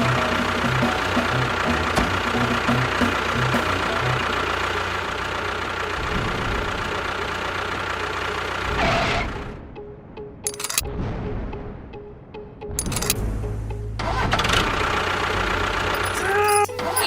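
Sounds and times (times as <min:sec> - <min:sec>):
small engine running: 0:00.0 - 0:09.6, 0:14.0 - 0:17.0.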